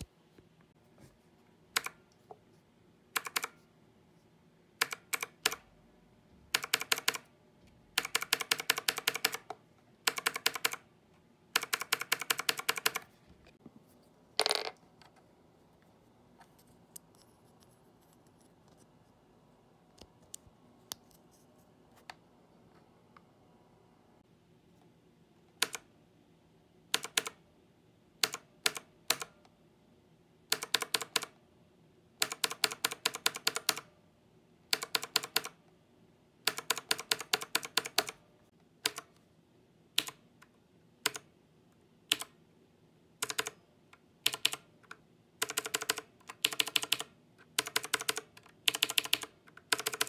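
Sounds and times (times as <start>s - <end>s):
mechanical keyboard typing: 3.2s - 3.6s, 4.8s - 5.7s, 6.5s - 7.3s, 7.9s - 10.9s, 11.6s - 13.1s, 25.6s - 25.9s, 27.0s - 27.4s, 28.2s - 29.4s, 30.5s - 31.4s, 32.2s - 33.9s, 34.7s - 35.6s, 36.5s - 38.2s, 38.8s - 39.1s, 40.0s - 40.2s, 41.0s - 41.3s, 42.1s - 42.4s, 43.2s - 43.6s, 44.2s - 50.0s.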